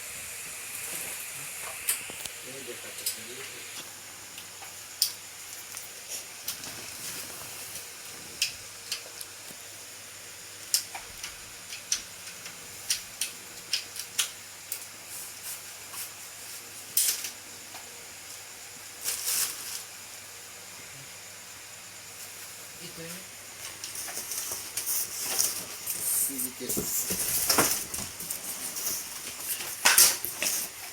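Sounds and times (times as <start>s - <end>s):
faint steady hiss: 0.0s - 30.9s
packaging rustling: 23.6s - 30.9s.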